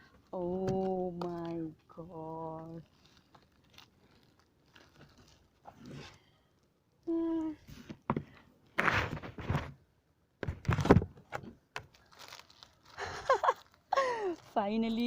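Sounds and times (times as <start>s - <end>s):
packaging rustling and tearing: 0.1s - 6.3s, 10.4s - 15.0s.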